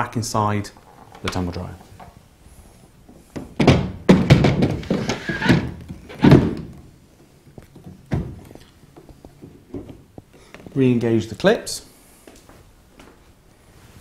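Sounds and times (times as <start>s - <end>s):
thunks and scraping of plastic housing: 3.4s - 6.8s.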